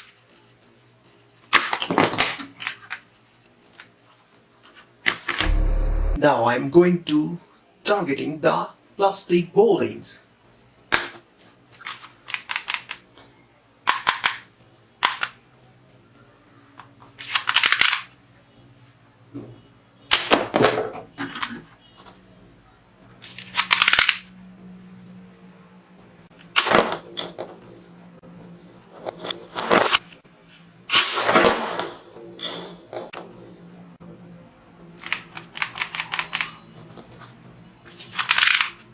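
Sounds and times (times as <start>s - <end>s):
noisy bursts: 5.4s - 6.2s.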